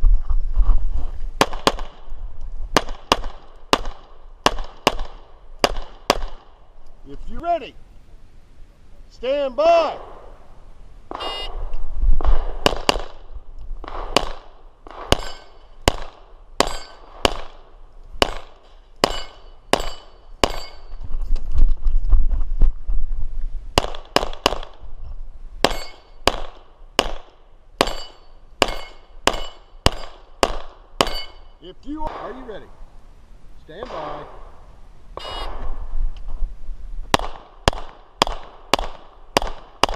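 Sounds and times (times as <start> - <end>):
pistol shots: 2.8 - 6.6, 12.2 - 20.8, 23.8 - 24.8, 25.6 - 32.6, 33.8 - 34.4, 37.1 - 39.9.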